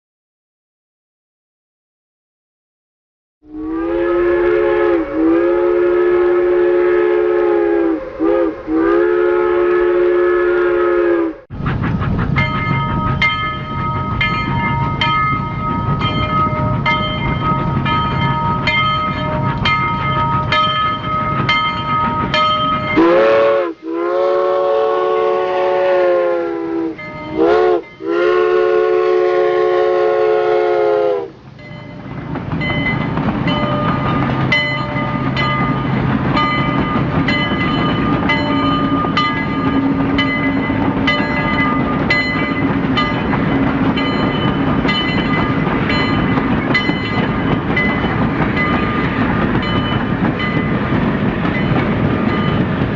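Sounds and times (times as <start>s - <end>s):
steam locomotive whistle: 3.4s - 11.5s, 18.4s - 31.5s
train running: 3.5s - 52.9s
wheels clicking over rail joints: 11.7s - 23.1s, 31.4s - 52.9s.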